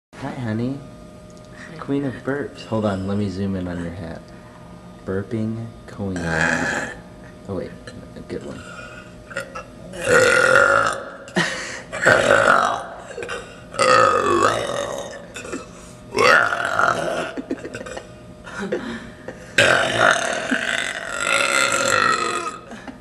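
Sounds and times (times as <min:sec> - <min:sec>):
woman burping loudly: 0:06.2 - 0:07.0, 0:08.7 - 0:18.1, 0:19.5 - 0:23.0.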